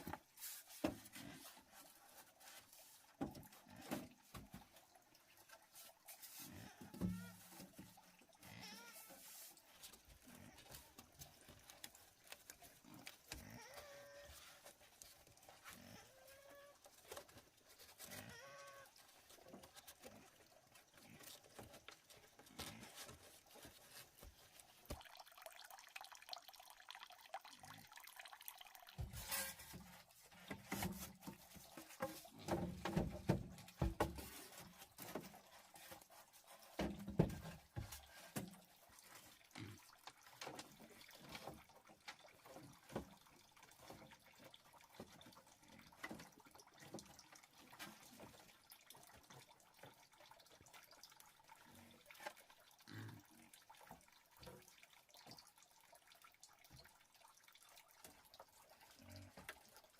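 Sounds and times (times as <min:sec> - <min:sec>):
water sloshing and dripping: 0:00.0 - 0:59.9.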